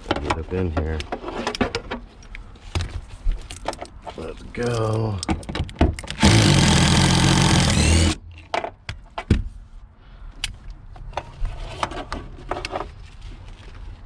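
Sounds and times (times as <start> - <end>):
power tool turning bolt: 6.0 - 8.2.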